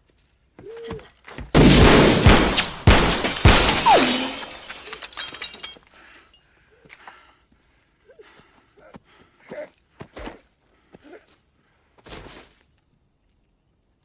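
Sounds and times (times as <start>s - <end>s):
gunshots: 1.6s - 4.7s
falling glass and debris: 1.6s - 6.4s
glass shattering: 1.6s - 6.4s.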